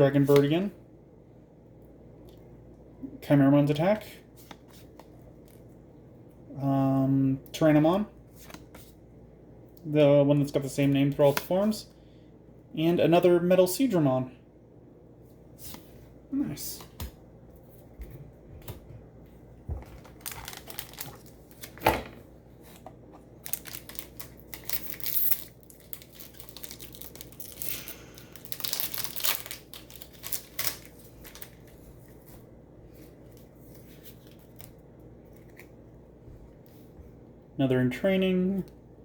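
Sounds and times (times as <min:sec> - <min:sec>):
foil wrapper crinkling: 0:19.8 - 0:21.8, 0:23.4 - 0:32.2
foil wrapper ripping: 0:19.9 - 0:21.8, 0:23.4 - 0:31.8.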